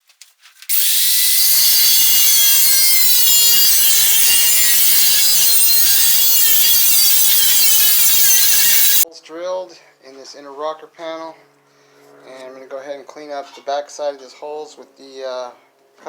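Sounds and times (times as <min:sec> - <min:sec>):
angle grinder grinding metal: 0:00.7 - 0:09.0.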